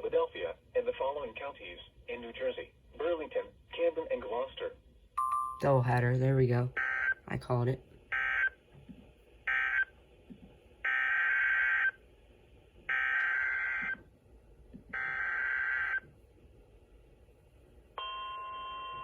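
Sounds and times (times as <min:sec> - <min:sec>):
steady warning alarm tone: 0:05.2 - 0:07.3, 0:08.1 - 0:08.6, 0:09.5 - 0:09.9, 0:10.8 - 0:12.0, 0:12.9 - 0:14.1, 0:14.9 - 0:16.1, 0:18.0 - 0:19.0.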